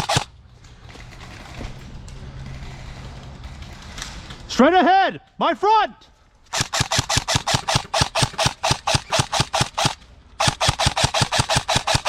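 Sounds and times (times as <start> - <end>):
airsoft gun firing bursts: 0.0 - 0.3, 6.5 - 12.0.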